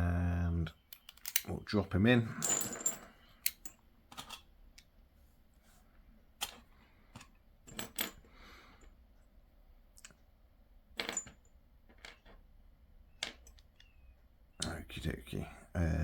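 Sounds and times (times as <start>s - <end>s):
padlock parts clicking: 0.8s - 1.6s, 2.8s - 4.9s.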